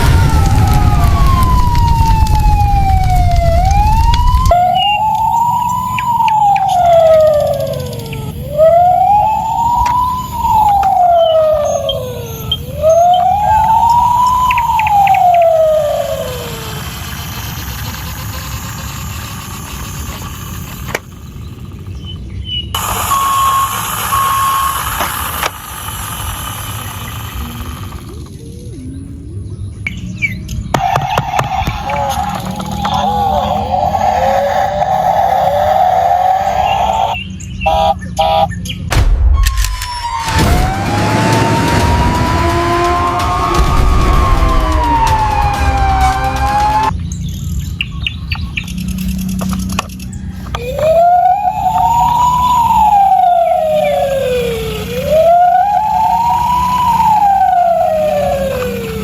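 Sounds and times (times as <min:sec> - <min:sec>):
siren wailing: 0:00.0 - 0:29.5, 0:30.2 - 0:38.6, 0:39.2 - 0:47.0, 0:48.0 - 0:59.0
short beeps: 0:22.8 - 0:24.8.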